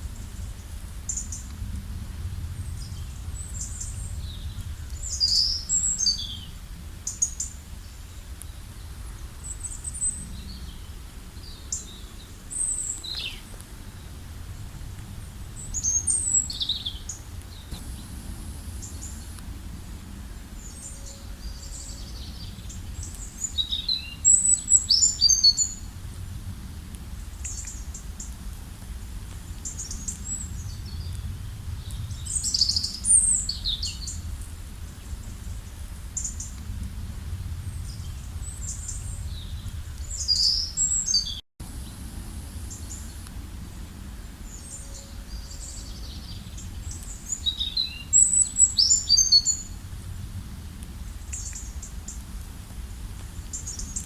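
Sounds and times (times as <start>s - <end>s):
low background rumble: 0.0s - 23.6s.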